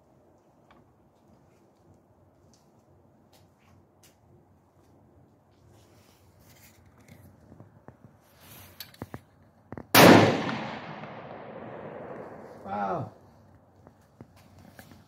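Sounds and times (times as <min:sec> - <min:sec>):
rifle shot: 0:09.9 - 0:12.7.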